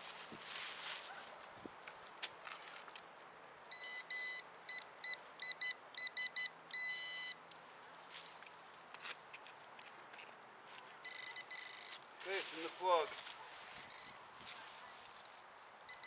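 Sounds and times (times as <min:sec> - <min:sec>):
pinpointer beeping: 0:03.7 - 0:07.4, 0:11.0 - 0:12.0, 0:13.8 - 0:14.2.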